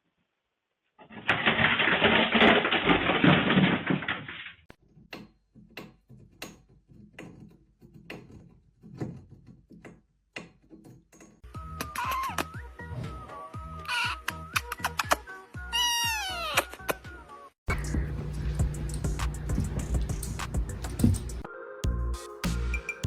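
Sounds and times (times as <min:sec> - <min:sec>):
loud rustling or scraping: 0:01.0 - 0:04.7.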